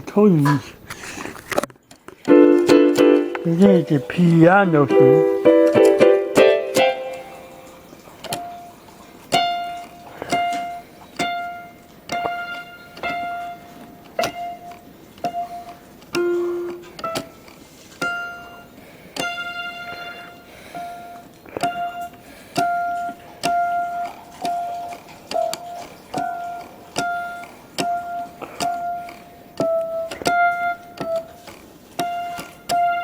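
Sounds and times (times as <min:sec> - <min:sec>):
keyboard piano notes: 0:02.2 - 0:33.0.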